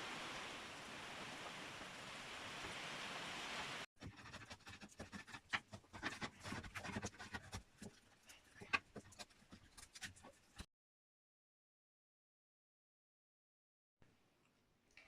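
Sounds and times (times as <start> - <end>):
hand tool scraping wood: 4.0 - 10.6.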